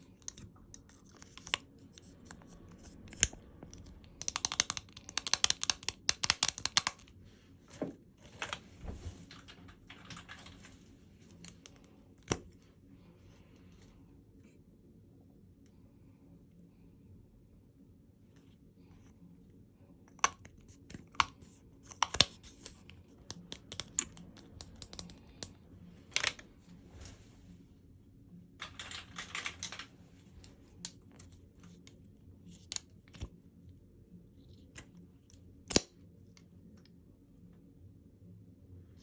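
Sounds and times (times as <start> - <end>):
packaging clicks and taps: 3.1 - 7.1.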